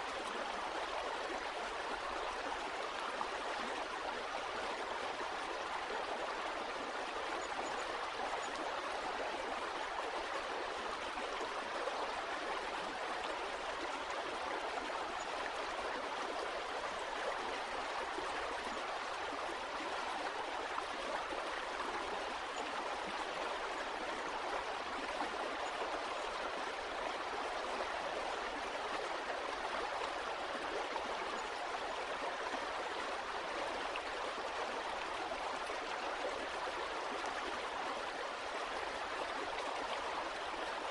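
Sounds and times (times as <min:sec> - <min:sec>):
stream water babbling: 0:00.0 - 0:40.9.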